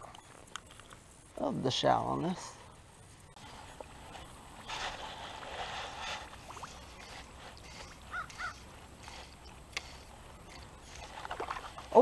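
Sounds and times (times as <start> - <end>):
soft rustling: 3.2 - 12.0
bird calling: 6.7 - 11.6.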